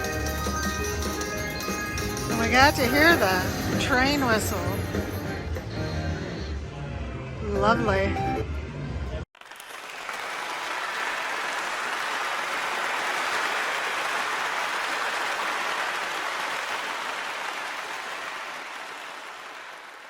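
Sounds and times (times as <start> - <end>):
applause: 9.3 - 20.0.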